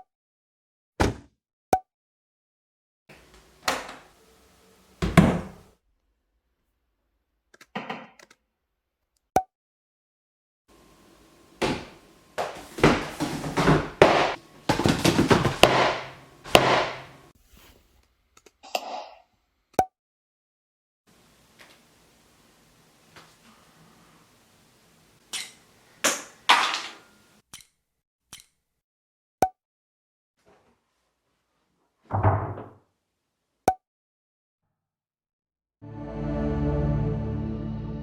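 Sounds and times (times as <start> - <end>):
objects thudding and knocking: 5.0 - 5.7, 11.6 - 17.3, 32.1 - 32.8.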